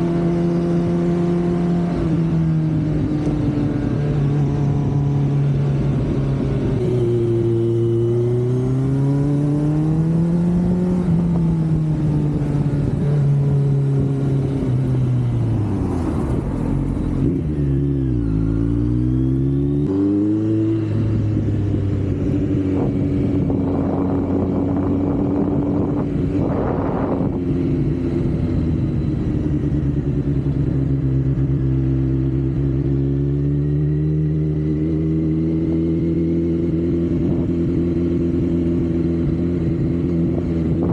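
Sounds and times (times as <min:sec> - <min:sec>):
motorcycle engine running: 0:00.0 - 0:40.9
wind buffeting microphone: 0:20.8 - 0:31.2.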